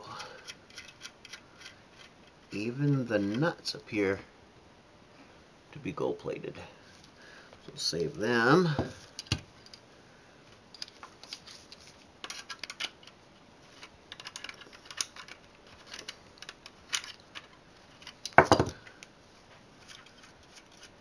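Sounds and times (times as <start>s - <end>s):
small metal parts clinking: 13.8s - 18.8s.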